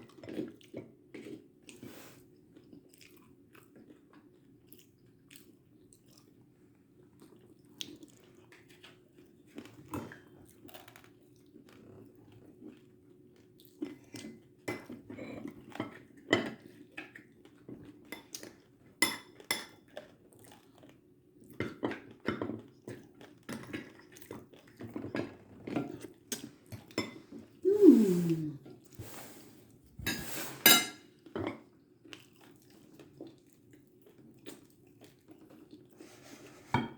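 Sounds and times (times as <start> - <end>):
chewing and crunching food: 0.0 - 27.6, 31.2 - 36.2
cutlery and dishes clinking: 30.0 - 31.6.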